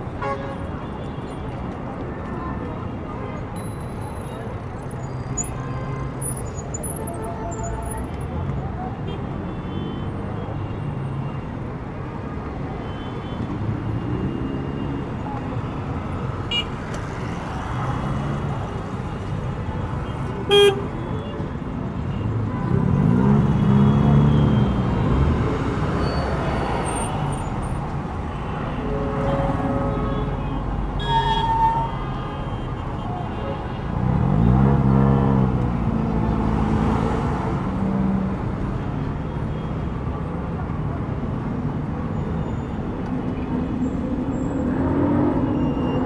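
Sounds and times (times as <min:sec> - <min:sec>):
city street traffic: 0:00.0 - 0:46.0
car horn toot: 0:20.4 - 0:21.3, 0:28.3 - 0:34.5.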